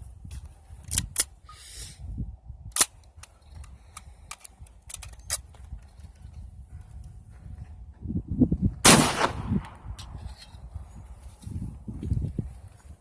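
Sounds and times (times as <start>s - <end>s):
pistol metallic clicks and clacks: 2.7s - 6.4s.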